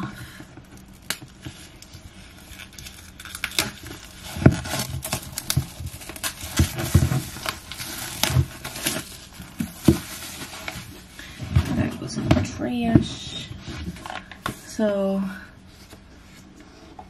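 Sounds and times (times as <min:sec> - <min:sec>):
plastic film crinkling and tearing: 0:00.6 - 0:11.2.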